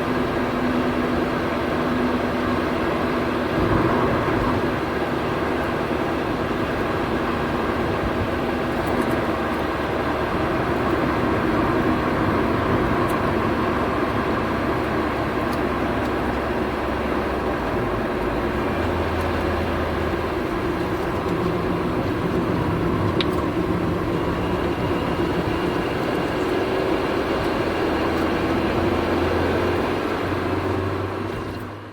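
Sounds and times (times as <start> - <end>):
road and engine noise: 0.0 - 31.9
wheel bearing droning growl: 17.2 - 31.6.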